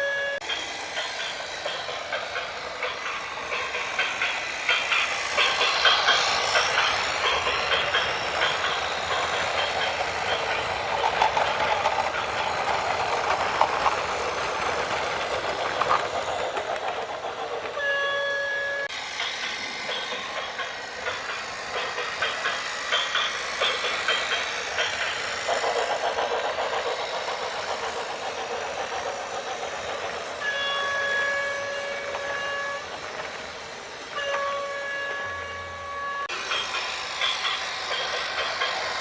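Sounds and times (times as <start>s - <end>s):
clattering machine noise: 0.4s - 17.8s.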